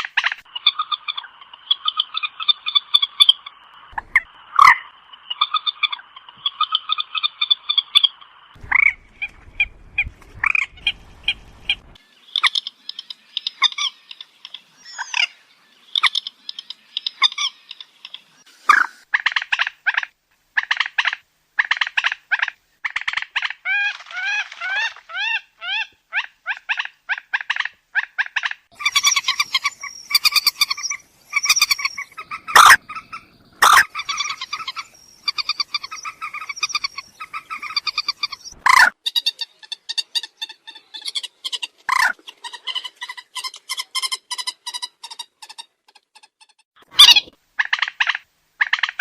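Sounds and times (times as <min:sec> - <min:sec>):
moorhen calls: 0:20.6 - 0:45.2.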